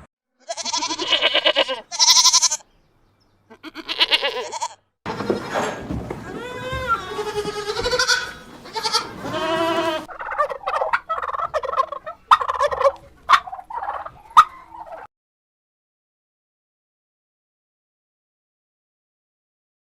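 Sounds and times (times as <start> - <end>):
wavering animal bleat: 0.4 - 2.7, 3.5 - 5.6, 6.3 - 10.1.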